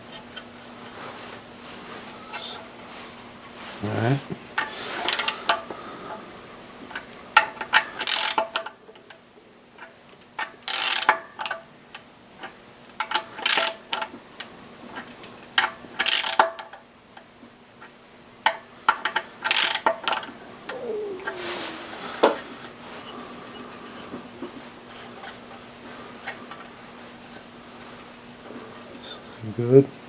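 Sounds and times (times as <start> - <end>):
hand ratchet clicking: 5.1 - 5.4, 8.0 - 8.7, 10.6 - 11.5, 13.4 - 13.8, 16.0 - 16.4, 19.4 - 19.8.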